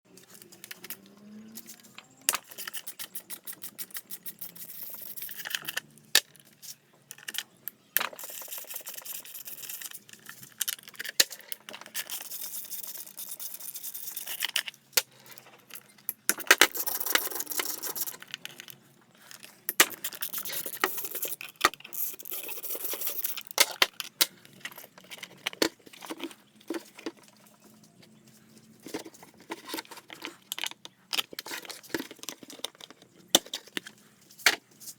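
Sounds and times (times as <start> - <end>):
metal tools clicking and clinking: 0.2 - 6.4.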